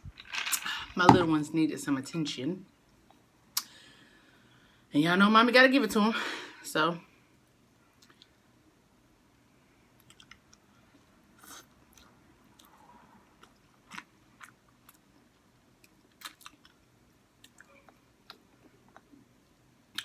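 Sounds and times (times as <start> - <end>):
person chewing noodles: 10.0 - 19.3.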